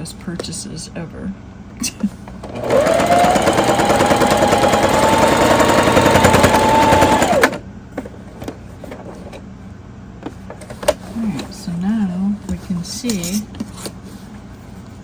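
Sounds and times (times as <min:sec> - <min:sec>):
sewing machine running fast: 0:02.5 - 0:07.6.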